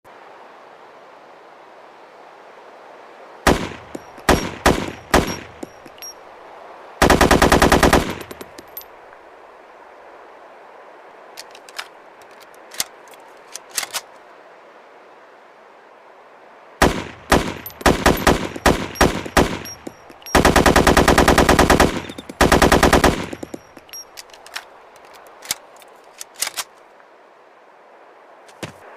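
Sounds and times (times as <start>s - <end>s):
rifle firing: 3.5s - 5.4s, 7.0s - 8.4s, 16.8s - 23.6s
sharp cracks: 16.8s - 26.7s.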